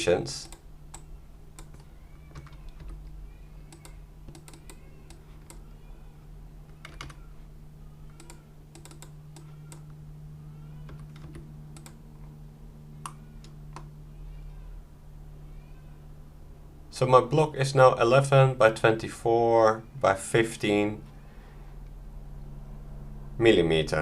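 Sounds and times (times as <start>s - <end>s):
steady low hum: 0.0s - 24.0s
typing on a keyboard: 0.4s - 3.0s, 3.7s - 4.8s, 6.7s - 7.2s, 8.1s - 9.8s, 10.9s - 12.0s.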